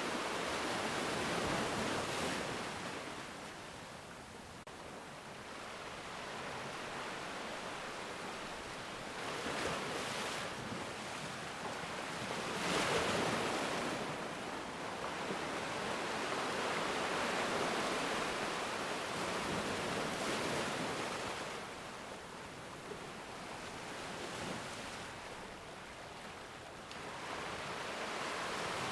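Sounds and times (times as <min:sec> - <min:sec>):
sea waves washing ashore: 0:00.0 - 0:28.9.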